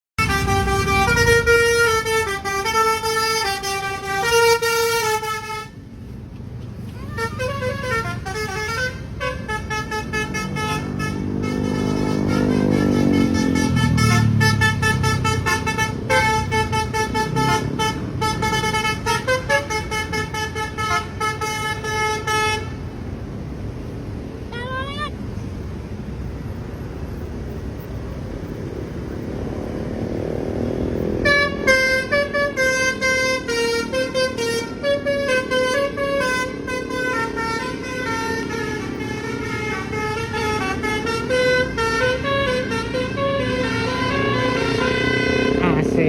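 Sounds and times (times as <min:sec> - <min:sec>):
musical air horn tune: 0:00.2 - 0:05.8, 0:07.0 - 0:22.8, 0:31.2 - 0:45.8
bus engine passing: 0:00.2 - 0:46.0.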